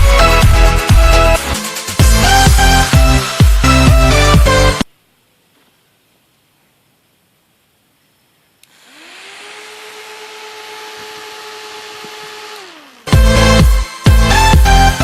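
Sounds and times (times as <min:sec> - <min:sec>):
loud electronic music: 0:00.0 - 0:04.8, 0:13.1 - 0:15.0
electric fan motor whirring: 0:08.6 - 0:13.8.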